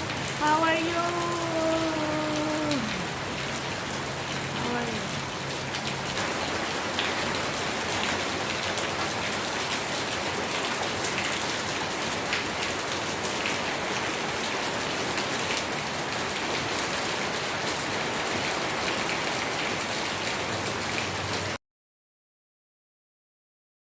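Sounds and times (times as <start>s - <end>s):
rain pattering: 0.0s - 21.6s.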